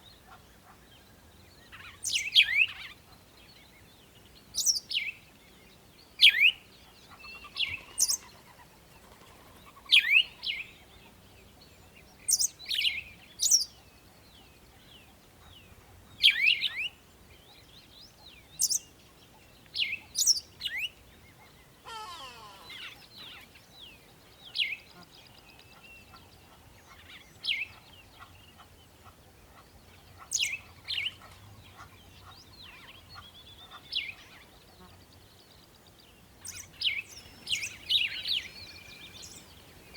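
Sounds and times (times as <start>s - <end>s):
birds chirping: 17.4s - 39.9s.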